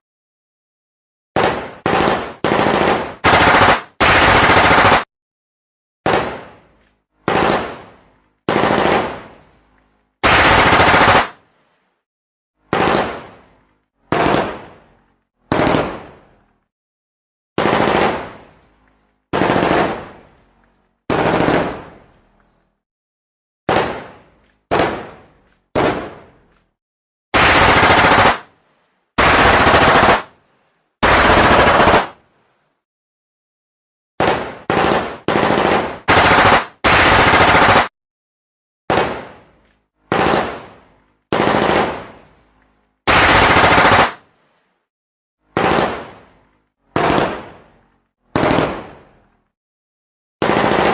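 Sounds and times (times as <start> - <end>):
automatic gunfire bursts: 1.4 - 5.1, 7.2 - 7.8, 8.5 - 9.3, 10.2 - 11.4, 12.7 - 13.3, 14.1 - 14.6, 15.5 - 16.1, 17.6 - 18.4, 19.3 - 20.1, 21.1 - 21.9, 27.4 - 28.5, 29.2 - 30.3, 31.0 - 32.2, 34.2 - 37.9, 40.1 - 40.7, 41.3 - 42.1, 43.1 - 44.2, 45.6 - 46.1, 47.0 - 47.4, 48.4 - 48.9, 50.4 - 50.9.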